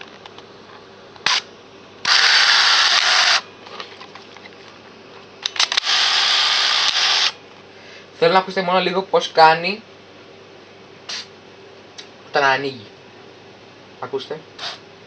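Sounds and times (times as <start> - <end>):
sharp camera clicks: 1.2 - 1.5, 2.1 - 3.4, 5.4 - 7.4
camera film motor whirring: 1.2 - 3.5, 5.4 - 7.4.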